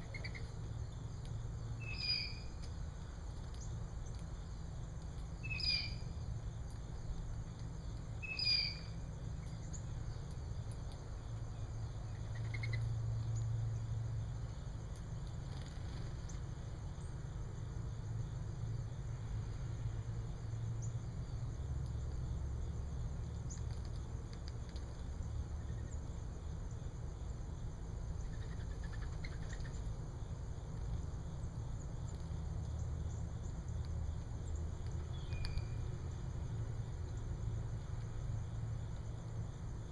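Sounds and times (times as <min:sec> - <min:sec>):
bird chirps: 0:00.0 - 0:02.7, 0:05.4 - 0:06.2, 0:08.2 - 0:10.3, 0:11.5 - 0:13.5, 0:28.2 - 0:29.9, 0:34.5 - 0:35.9.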